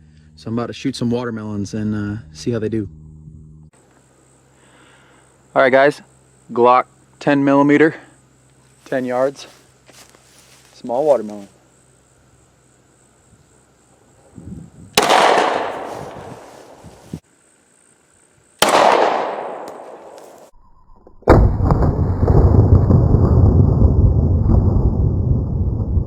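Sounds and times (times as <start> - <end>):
heavy low rumble: 0.0 - 3.7
pistol shots echoing: 15.0 - 16.5, 18.6 - 20.4
loud sudden blast: 21.3 - 25.2.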